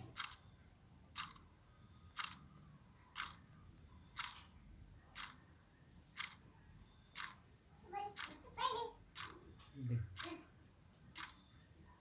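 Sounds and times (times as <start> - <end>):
sharp hissy clicks: 1.2 - 1.5, 4.2 - 4.5, 5.2 - 5.4, 6.2 - 6.4, 7.2 - 7.4, 8.2 - 8.4, 9.2 - 10.4, 11.1 - 11.4.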